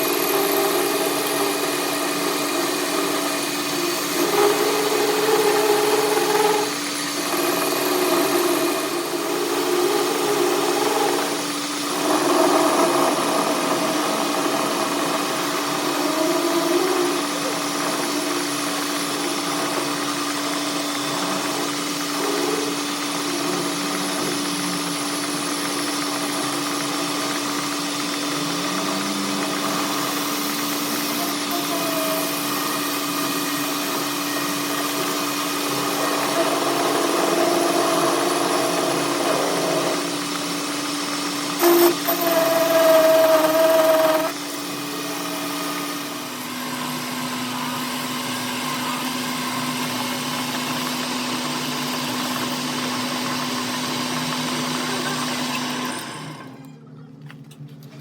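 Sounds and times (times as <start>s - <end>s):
machine humming: 16.7s - 51.0s.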